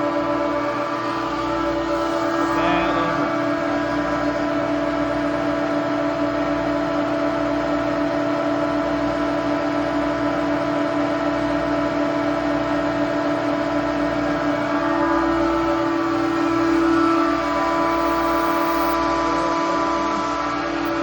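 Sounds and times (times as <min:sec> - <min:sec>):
refrigeration compressors humming: 0:00.0 - 0:21.0.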